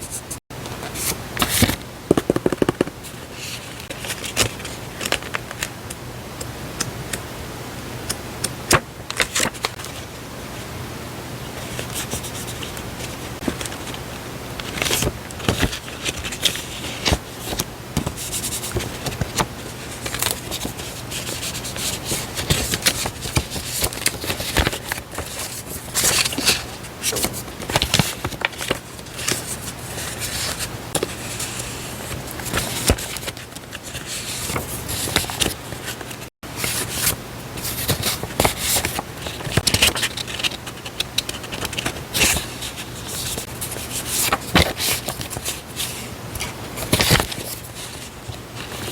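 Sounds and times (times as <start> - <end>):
paper rustling and crinkling: 0.0 - 5.8, 8.7 - 10.1, 14.6 - 48.9
small taps and clicks: 2.1 - 3.0.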